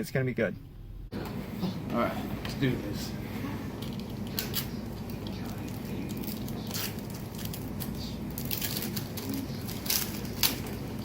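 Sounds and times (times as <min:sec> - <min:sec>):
steady low hum: 0:00.0 - 0:11.0
plastic packets crinkling: 0:03.9 - 0:11.0.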